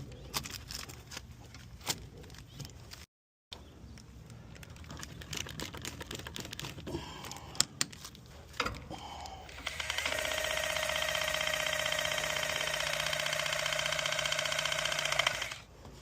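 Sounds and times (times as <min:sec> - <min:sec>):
pulsing machine hum: 0:09.5 - 0:15.6.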